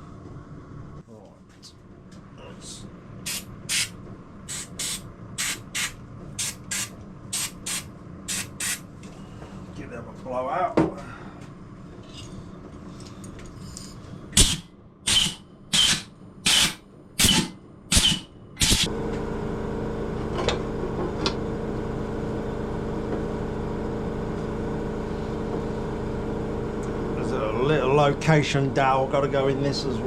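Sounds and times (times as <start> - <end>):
air compressor motor humming: 3.2 - 9.7, 14.3 - 30.0
air blow gun blasts: 14.4 - 18.9.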